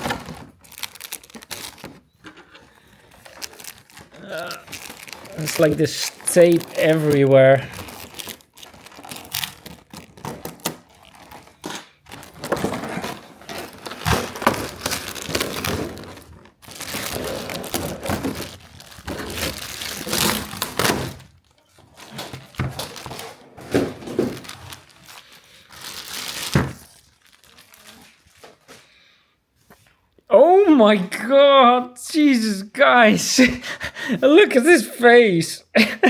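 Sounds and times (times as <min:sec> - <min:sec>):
plastic packaging crinkling: 0:00.0 - 0:28.9.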